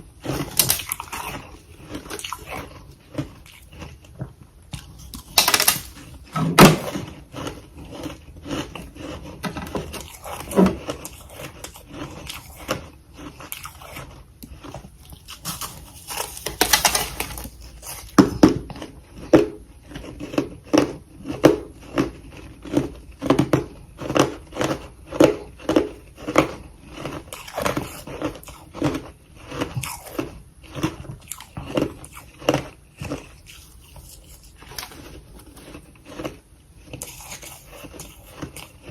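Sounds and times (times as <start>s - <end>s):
chewing crunchy frost: 0.0s - 38.9s.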